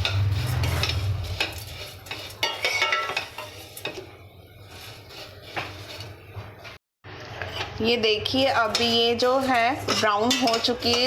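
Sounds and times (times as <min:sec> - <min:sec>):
spoon scraping and clinking pan: 0:00.0 - 0:06.2, 0:08.5 - 0:11.0.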